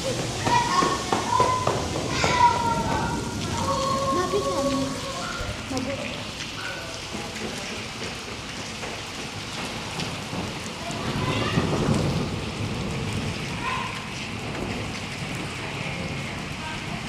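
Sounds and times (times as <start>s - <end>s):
low rumble of thunder: 0.0s - 7.1s, 9.7s - 17.0s
heavy rain pouring: 0.0s - 17.0s.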